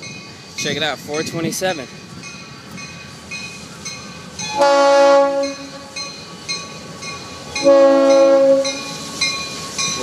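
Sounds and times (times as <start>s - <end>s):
locomotive air horn chord: 4.5s - 5.9s, 7.6s - 8.8s.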